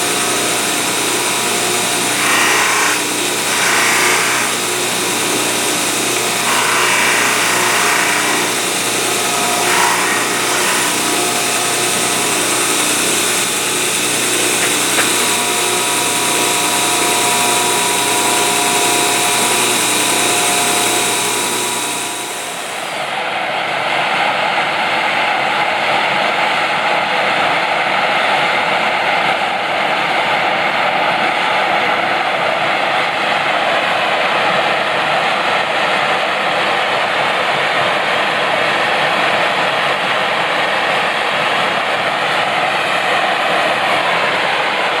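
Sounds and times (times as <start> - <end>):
power tool grinding metal: 0.0 - 23.1.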